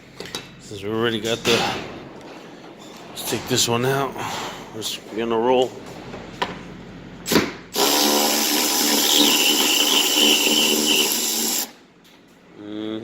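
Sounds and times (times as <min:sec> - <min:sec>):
cordless power driver whining: 0:07.8 - 0:11.7.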